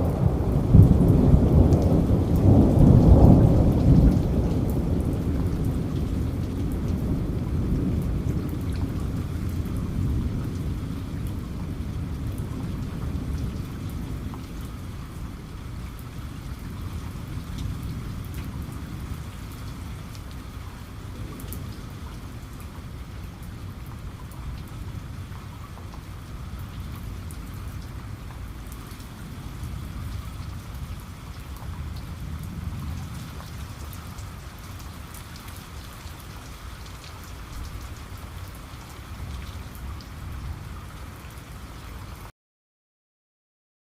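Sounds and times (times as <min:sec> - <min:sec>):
steady rain falling: 0:00.0 - 0:42.3.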